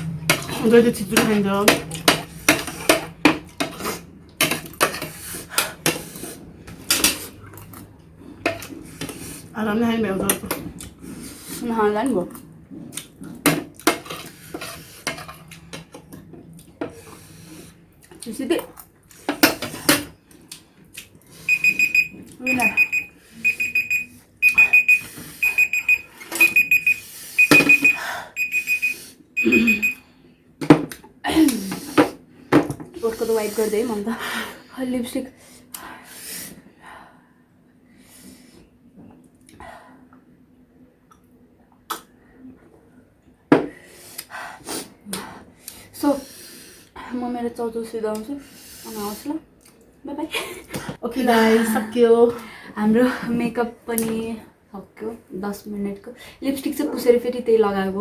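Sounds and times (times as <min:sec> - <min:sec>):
utensils clinking against a bowl: 0:00.0 - 0:06.2
digital timer beeping: 0:21.5 - 0:30.0.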